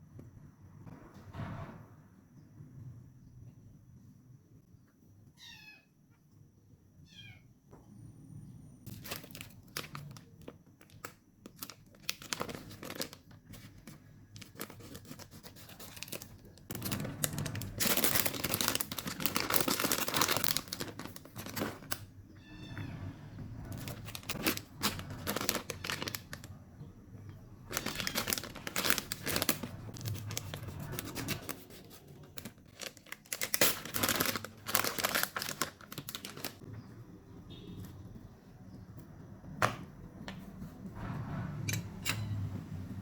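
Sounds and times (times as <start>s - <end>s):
packaging crinkling and tearing: 8.9s - 22.1s, 23.7s - 26.5s, 27.6s - 36.6s.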